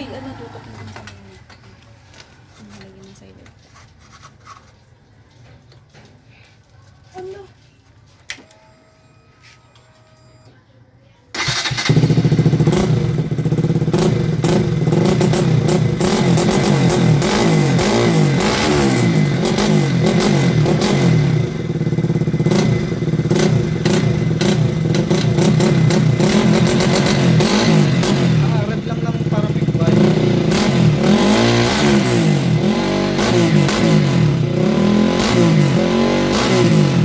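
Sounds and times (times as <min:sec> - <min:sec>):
motorcycle engine revving: 0:11.4 - 0:37.0.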